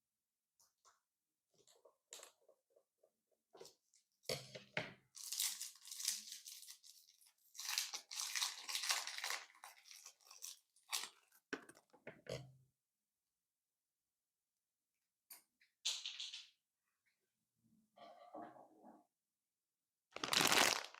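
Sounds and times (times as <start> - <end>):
slime crunching crackle: 20.2 - 20.9.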